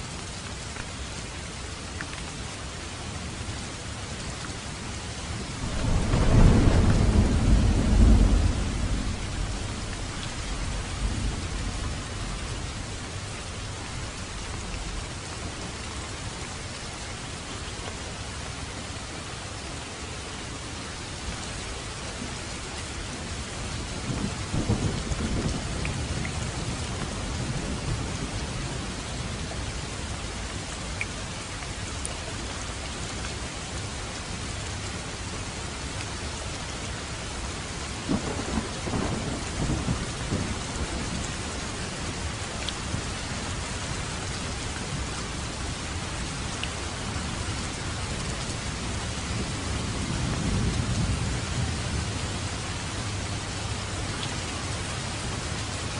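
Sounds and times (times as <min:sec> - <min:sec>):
heavy rain falling: 0:00.0 - 0:55.9
thunder rumbling: 0:05.6 - 0:12.7, 0:38.1 - 0:45.5, 0:48.5 - 0:52.4.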